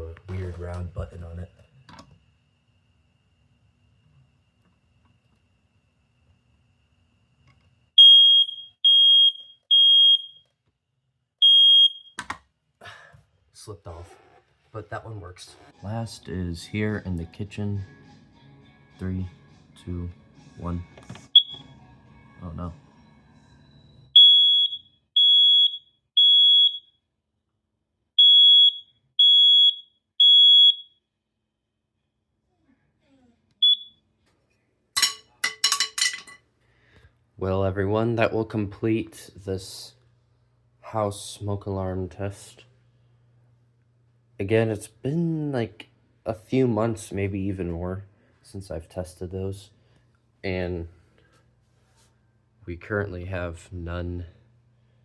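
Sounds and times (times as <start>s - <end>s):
smoke alarm beeping: 8.0s - 10.5s, 11.4s - 12.2s, 21.3s - 21.6s, 24.1s - 27.0s, 28.2s - 31.2s, 33.6s - 34.0s.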